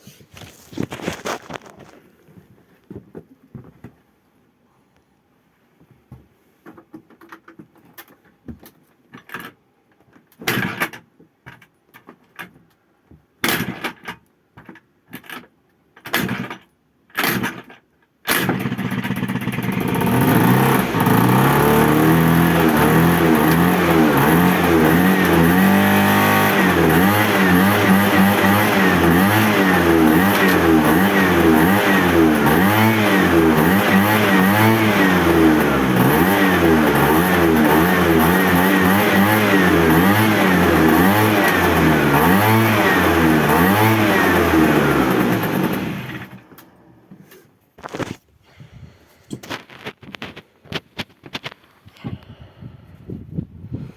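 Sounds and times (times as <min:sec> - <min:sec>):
scooter engine running: 0:18.3 - 0:46.6.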